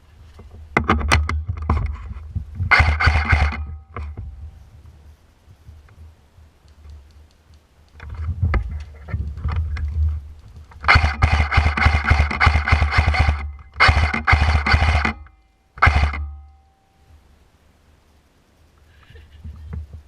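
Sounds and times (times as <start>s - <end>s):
handling rumble: 0.0s - 17.5s
airsoft gun firing bursts: 2.7s - 3.8s, 10.8s - 15.2s, 15.8s - 16.4s.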